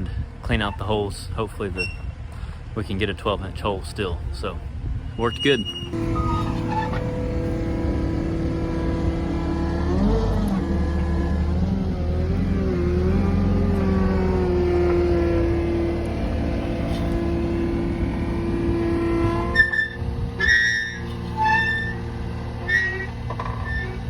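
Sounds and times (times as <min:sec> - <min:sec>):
short high squeaks: 0:01.8 - 0:02.1, 0:05.2 - 0:07.6, 0:19.4 - 0:24.0
engine running with hydraulic whine: 0:05.2 - 0:24.0.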